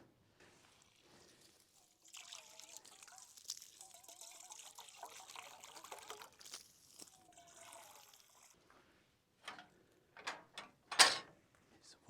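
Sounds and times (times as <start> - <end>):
water trickling into a bowl: 0.6 - 8.6.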